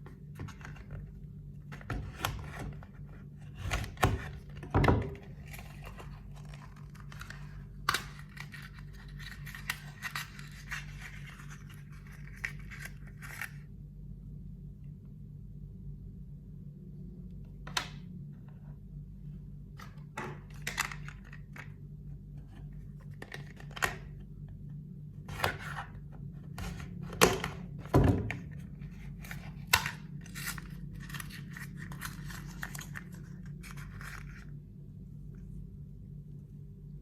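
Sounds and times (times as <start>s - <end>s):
steady low hum: 0.0s - 37.0s
packaging tearing and rustling: 2.1s - 13.6s, 28.5s - 34.6s.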